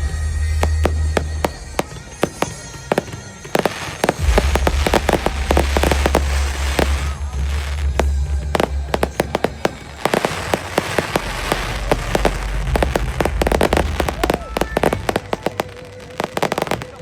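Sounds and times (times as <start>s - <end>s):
fireworks bangs and crackles: 0.0s - 17.0s
deep low rumble: 4.2s - 9.3s, 11.1s - 15.4s.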